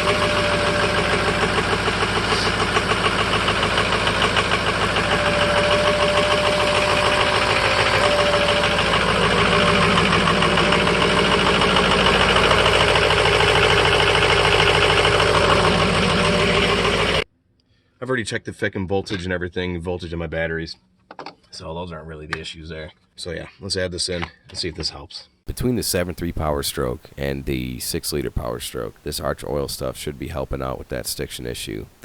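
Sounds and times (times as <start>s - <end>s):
diesel truck engine idling roughly: 0.0s - 17.2s.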